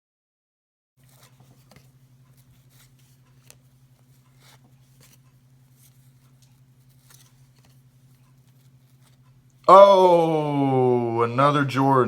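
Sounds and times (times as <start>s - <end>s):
cardboard cards being flipped: 1.0s - 9.2s.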